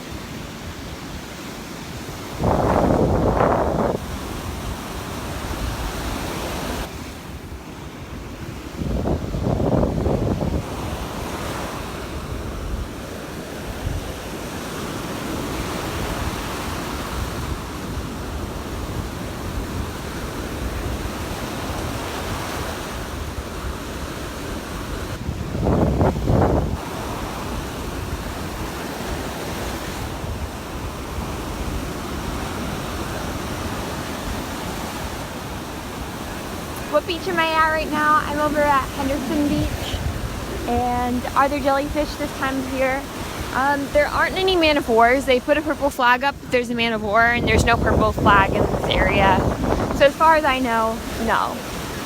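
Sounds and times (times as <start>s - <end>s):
waves washing onto beach: 0.0s - 52.0s
wind rumbling on microphone: 0.0s - 52.0s.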